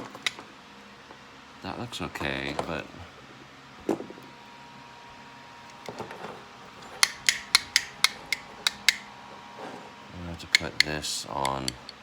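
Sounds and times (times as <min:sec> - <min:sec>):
metal parts knocking: 0:06.8 - 0:09.1
sharp metallic clicks: 0:07.0 - 0:09.1, 0:10.4 - 0:12.0.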